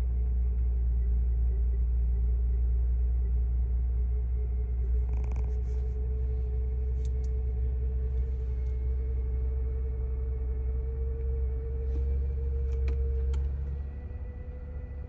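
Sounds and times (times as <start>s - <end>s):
alternator whine: 0.0s - 15.0s
car engine idling: 4.4s - 15.0s.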